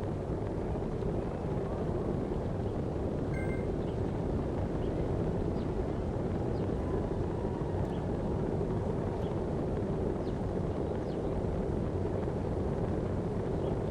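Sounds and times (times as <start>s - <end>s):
wind noise: 0.0s - 13.9s
faint short high chirps: 3.3s - 3.8s.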